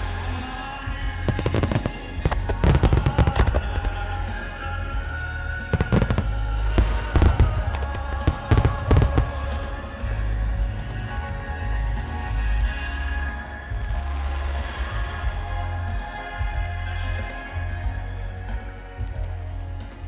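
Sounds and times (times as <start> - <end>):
music over sound system: 0.0 - 20.0
fireworks bursting: 1.3 - 4.2, 5.8 - 11.6.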